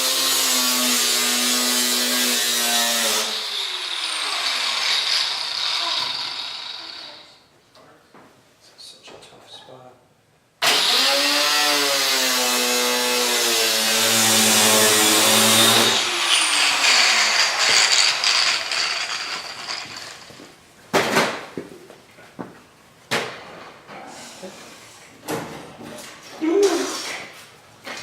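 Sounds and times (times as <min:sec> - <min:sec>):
power tool motor humming: 0:10.6 - 0:20.3.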